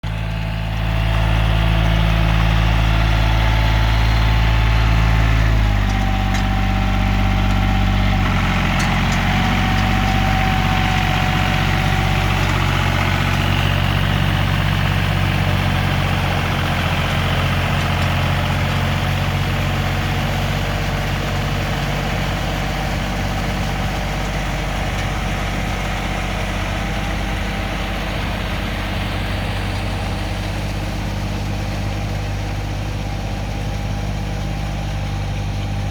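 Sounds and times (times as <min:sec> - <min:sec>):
tractor engine running: 0:00.0 - 0:35.9.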